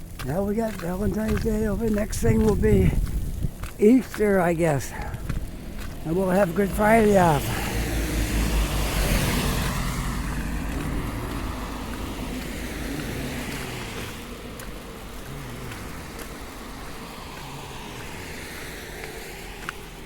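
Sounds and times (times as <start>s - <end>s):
car driving past: 5.6s - 20.0s.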